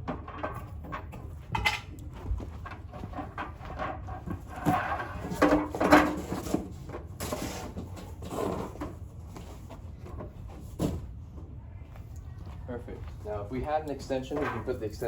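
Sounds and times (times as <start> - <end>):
plastic scraping: 2.8 - 9.0.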